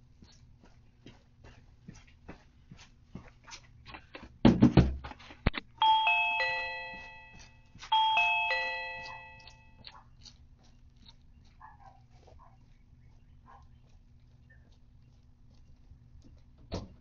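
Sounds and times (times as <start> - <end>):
electronic doorbell chime: 5.8 - 9.8.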